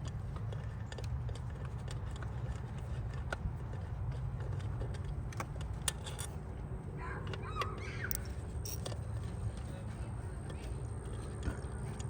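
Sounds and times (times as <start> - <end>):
steady low hum: 0.0 - 12.0
clicks of hand tools and metal parts: 4.4 - 6.4, 7.3 - 9.0.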